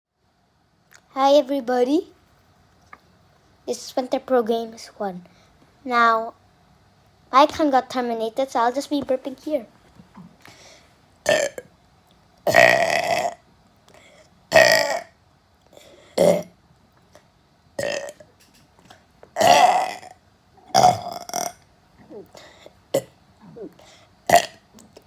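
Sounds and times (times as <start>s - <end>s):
person burping: 11.3s - 11.7s, 12.5s - 13.4s, 14.5s - 15.1s, 16.2s - 16.5s, 17.8s - 18.2s, 19.4s - 22.4s, 23.0s - 24.6s.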